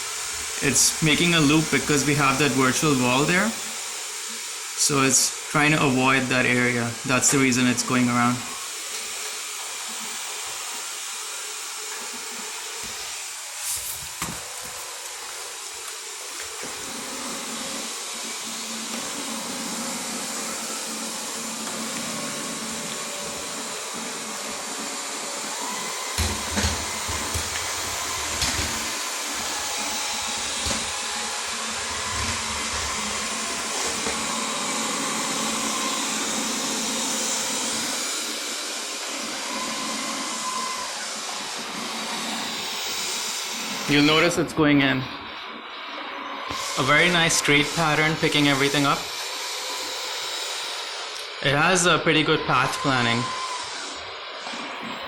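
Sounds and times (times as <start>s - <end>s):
robot vacuum whirring: 0.0s - 55.0s.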